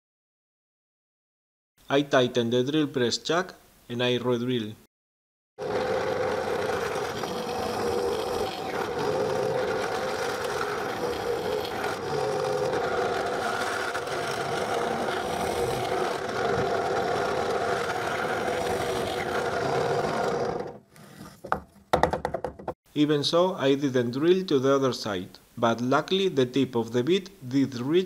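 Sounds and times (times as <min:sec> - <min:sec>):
drill press boring into wood: 0:05.6 - 0:20.8.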